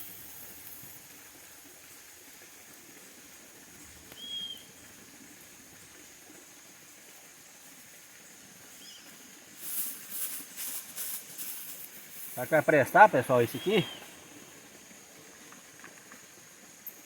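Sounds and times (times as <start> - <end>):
hot oil sizzling: 0.0 - 1.4, 8.7 - 14.6
high bird chirp: 13.4 - 14.2.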